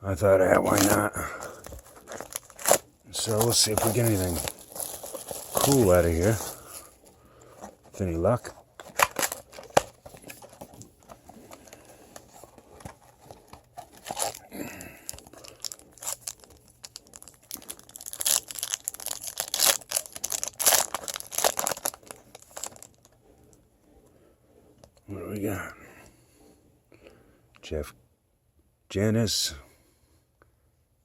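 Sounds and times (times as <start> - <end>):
packaging torn and crinkled: 0.4 - 23.2.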